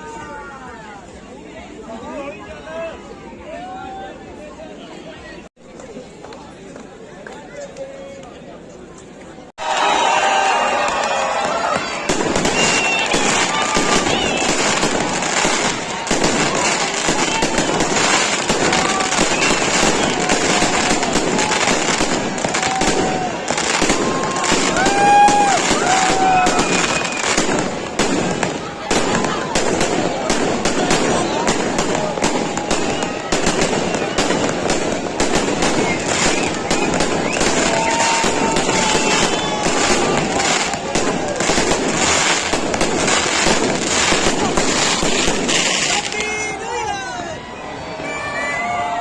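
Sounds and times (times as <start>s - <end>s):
fireworks crackling and banging: 10.3s - 47.3s.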